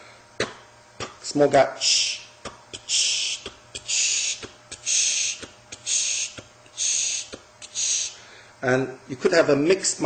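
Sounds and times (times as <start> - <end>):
mouth clicks imitating heartbeat: 1.8 - 8.1
hissed shh sound: 1.8 - 8.3.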